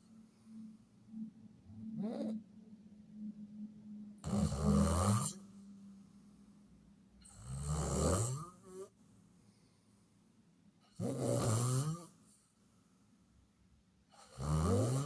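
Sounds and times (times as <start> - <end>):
person snoring: 1.9 - 2.4, 4.2 - 5.5, 11.0 - 12.1, 14.2 - 15.0.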